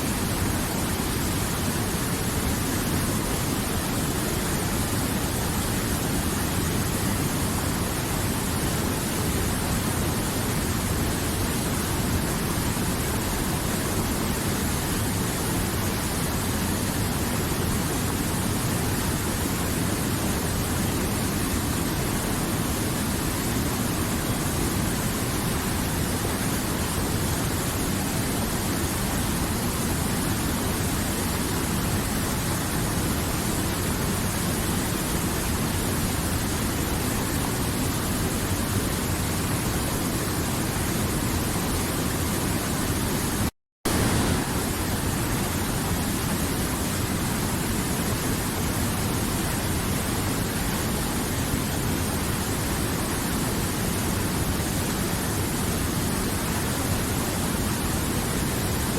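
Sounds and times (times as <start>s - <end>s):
river water flowing: 43.9s - 58.9s.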